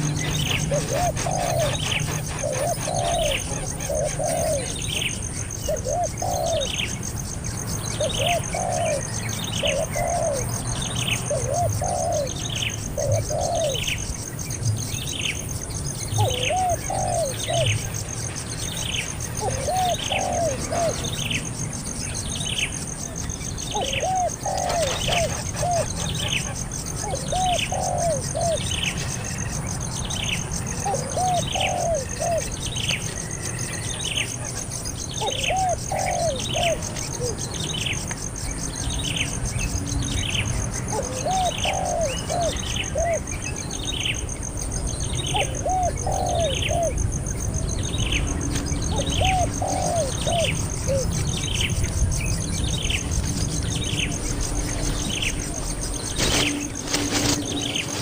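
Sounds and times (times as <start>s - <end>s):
dove cooing: 0.0s - 7.0s, 7.9s - 14.0s, 16.1s - 18.0s, 19.3s - 21.5s, 23.6s - 29.5s, 30.4s - 33.0s, 33.7s - 37.7s, 40.8s - 43.4s, 45.2s - 47.6s, 48.6s - 51.7s
small bird chirping: 0.0s - 58.0s.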